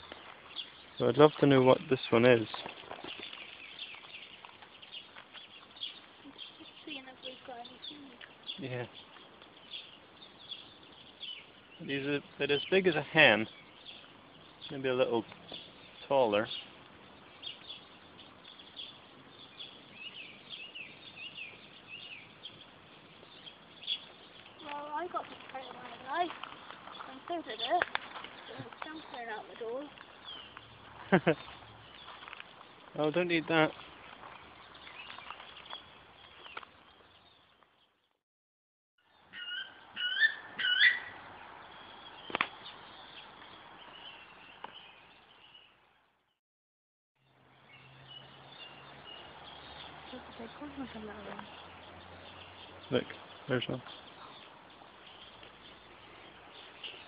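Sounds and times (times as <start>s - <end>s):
faint outdoor background hiss: 0.0s - 38.2s, 39.0s - 46.4s, 47.2s - 57.0s
small birds chirping: 0.0s - 38.2s, 39.0s - 46.4s, 47.2s - 57.0s
bird shrill whistles: 39.4s - 41.1s.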